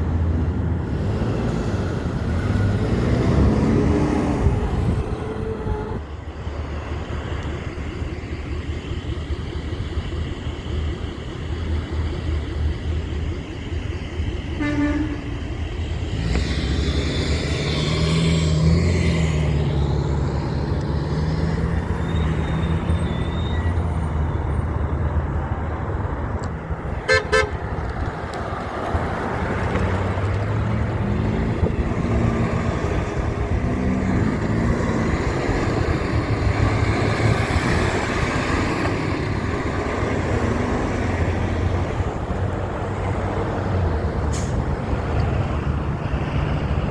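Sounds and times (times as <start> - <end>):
truck engines rumbling past: 0.0 - 46.9
truck horn blast: 14.5 - 15.5, 27.0 - 27.8.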